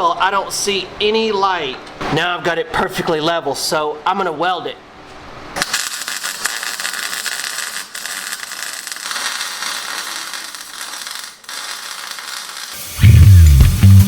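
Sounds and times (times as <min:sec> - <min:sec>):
welder crackling hiss: 0:05.6 - 0:14.0.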